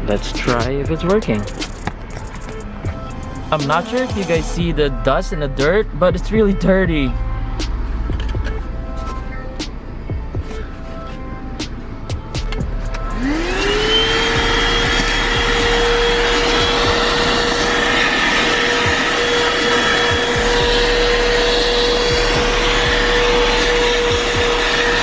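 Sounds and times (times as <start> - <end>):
handheld vacuum motor whine: 12.9 - 25.0.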